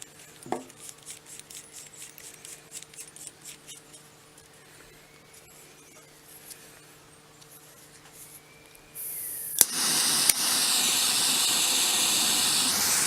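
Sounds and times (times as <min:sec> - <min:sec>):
blowtorch gas hissing: 0:09.0 - 0:13.0.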